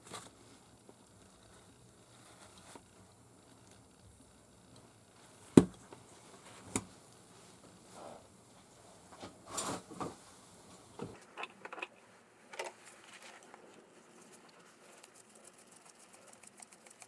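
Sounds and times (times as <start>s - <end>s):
faint ticks and rustles: 0.0s - 9.4s.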